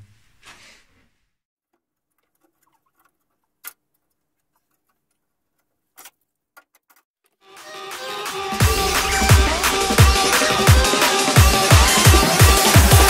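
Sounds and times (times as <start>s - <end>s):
electronic music: 7.5s - 13.0s.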